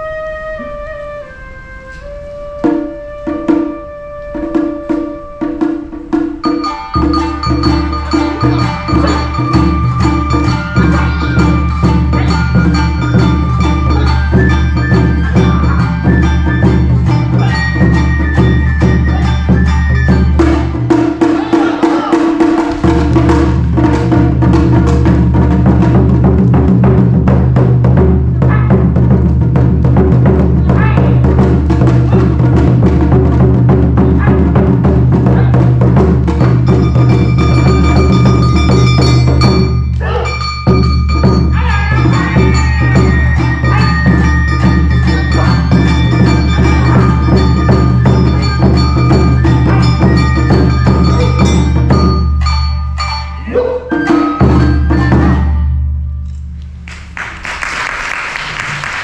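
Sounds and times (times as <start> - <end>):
bamboo flute melody: 0.0 - 22.8, 28.4 - 29.1, 30.4 - 32.5, 33.8 - 56.0
percussion ensemble: 0.0 - 59.0
drums beating steady rhythm: 2.0 - 56.0
high ringing tone: 6.4 - 20.6, 36.4 - 55.5.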